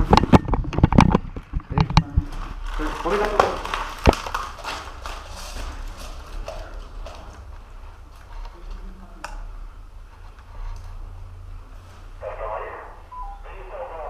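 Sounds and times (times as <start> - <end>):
footsteps: 0.0 - 12.2.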